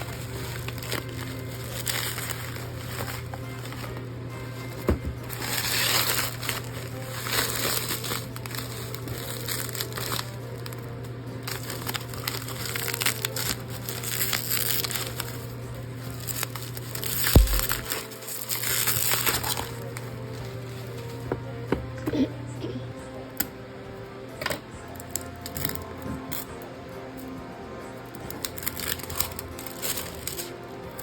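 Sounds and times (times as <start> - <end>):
crinkling and rustling: 0.0 - 21.3, 28.2 - 31.0.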